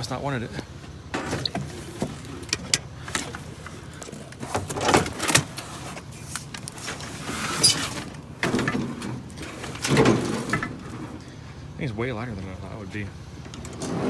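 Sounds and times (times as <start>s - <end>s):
low vehicle hum: 0.0s - 14.0s
scrap metal clattering: 0.7s - 11.4s.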